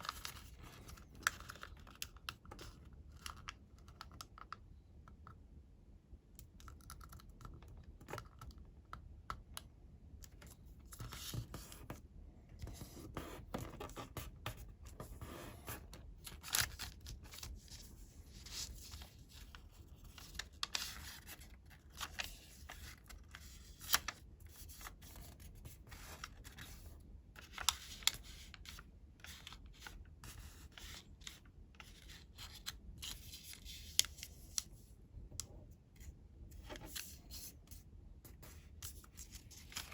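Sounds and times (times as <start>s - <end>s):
paper crinkling and rustling: 0.0s - 3.6s, 15.6s - 34.8s, 38.3s - 39.9s
crisp clicks of paper folds: 0.0s - 5.2s, 16.1s - 35.6s.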